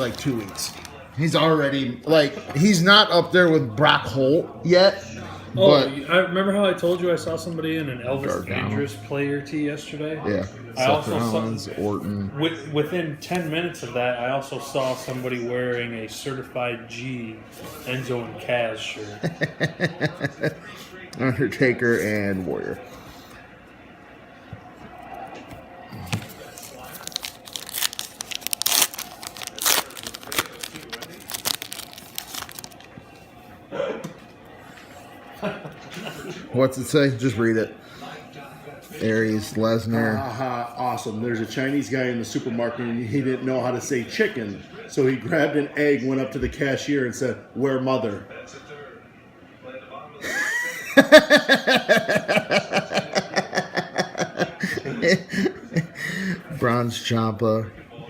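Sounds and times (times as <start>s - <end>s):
wrapper crinkling and tearing: 0.0s - 1.0s, 26.3s - 33.0s
hearty rhythmic laughter: 19.0s - 20.8s, 35.2s - 36.5s, 50.2s - 56.5s.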